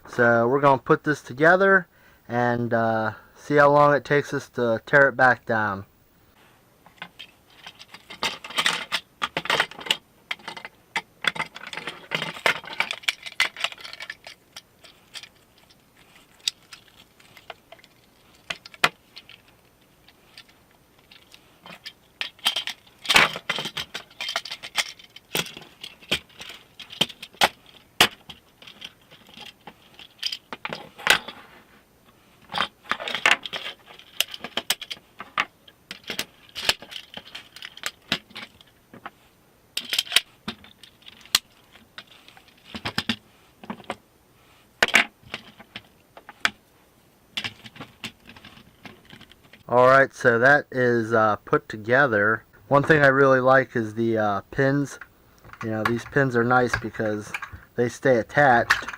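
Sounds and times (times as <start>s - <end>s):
clicks and knocks of parts: 6.8s - 31.4s, 32.4s - 39.2s, 39.8s - 44.0s, 44.8s - 46.6s, 47.4s - 49.7s, 54.9s - 58.9s.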